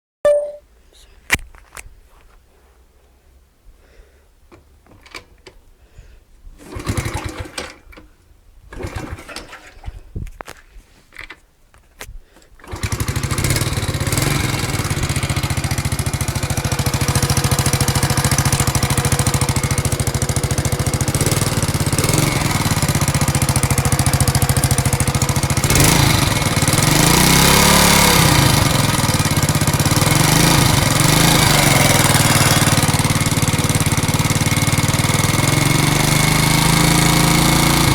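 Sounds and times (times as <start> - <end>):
moped engine starting and running: 4.6 - 5.6, 6.6 - 9.9, 12.6 - 37.9
engine knocking: 12.6 - 37.9.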